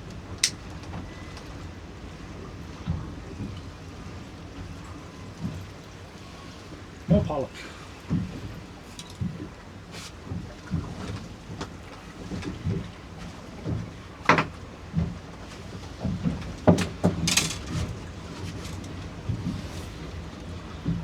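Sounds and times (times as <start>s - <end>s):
water slapping against hull: 5.4s - 21.0s.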